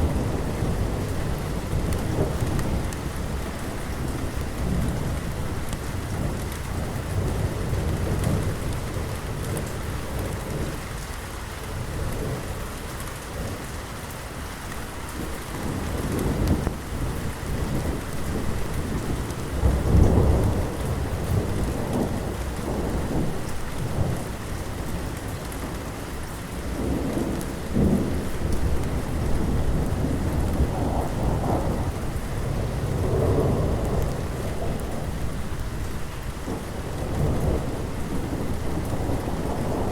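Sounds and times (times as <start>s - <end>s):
rolling thunder: 0.0s - 10.8s, 15.2s - 39.9s
heavy rain: 0.0s - 39.9s.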